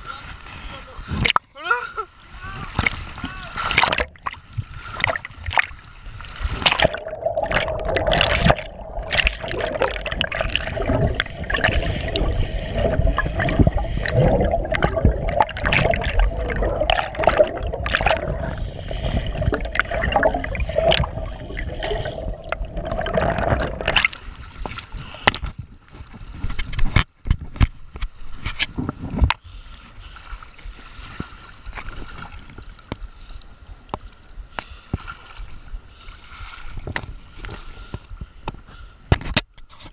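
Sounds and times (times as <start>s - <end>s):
river water rushing and splashing: 6.4s - 24.6s.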